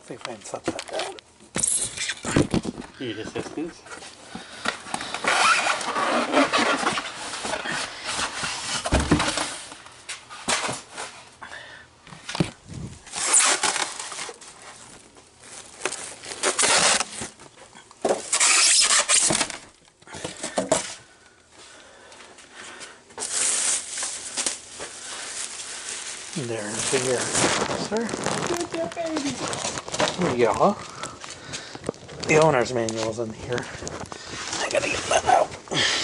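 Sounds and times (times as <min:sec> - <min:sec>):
cardboard packaging rustling and tearing: 0:04.7 - 0:11.2, 0:12.6 - 0:19.8, 0:23.2 - 0:35.7.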